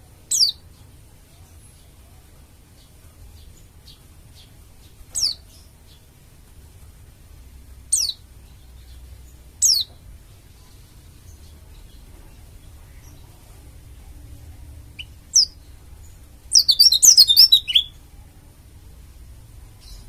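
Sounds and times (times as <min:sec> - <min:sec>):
bird high falling calls: 0:16.6 - 0:17.9.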